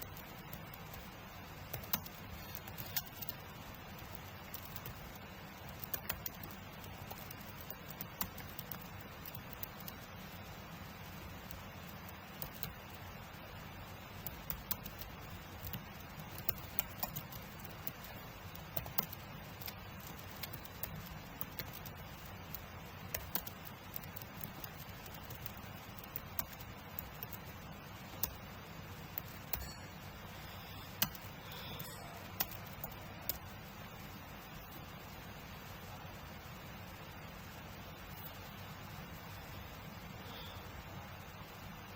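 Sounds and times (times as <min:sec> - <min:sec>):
keyboard typing clicks: 0:00.0 - 0:10.1, 0:11.4 - 0:13.0, 0:14.2 - 0:29.8, 0:30.7 - 0:33.5
faint steady hiss: 0:00.0 - 0:41.9.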